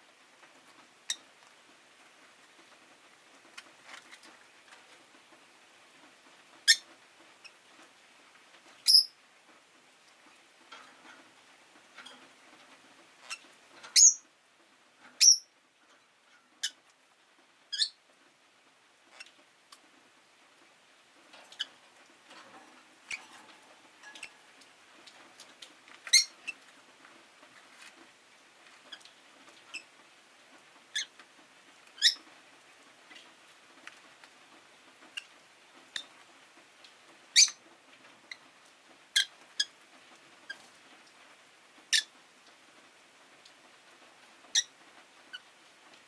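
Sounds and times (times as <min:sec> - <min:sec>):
lovebirds chirping: 0:08.8 - 0:09.1, 0:13.2 - 0:14.2.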